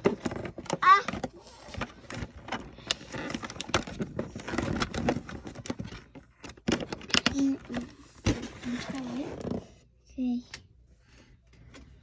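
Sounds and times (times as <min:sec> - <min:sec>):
packaging crackling and rustling: 0:00.0 - 0:09.6.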